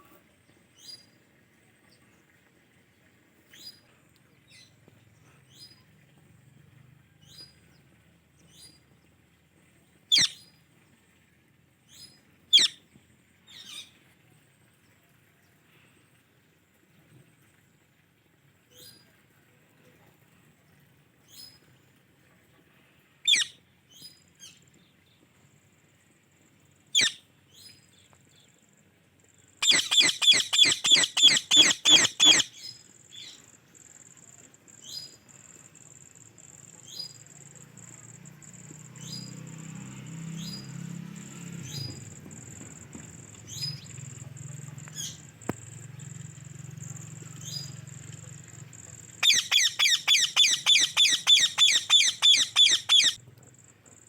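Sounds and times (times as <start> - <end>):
parakeet shrill calls: 10.1 - 10.4, 12.5 - 12.8, 23.2 - 23.6, 27.0 - 27.2, 29.6 - 32.7, 49.2 - 53.2.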